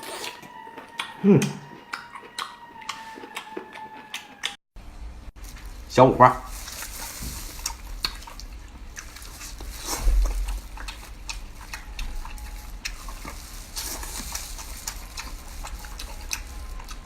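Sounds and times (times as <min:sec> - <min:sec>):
mouth clicks: 0:00.0 - 0:04.6
wet chewing: 0:00.0 - 0:04.6, 0:05.4 - 0:17.0.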